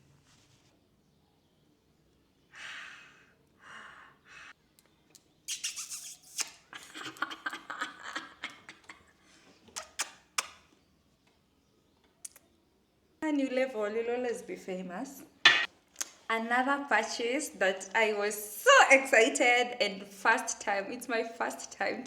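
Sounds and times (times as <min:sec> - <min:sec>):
breathy hisses: 0:02.5 - 0:04.6
wet clicks of lips and applicator: 0:09.7 - 0:10.7, 0:12.2 - 0:12.5.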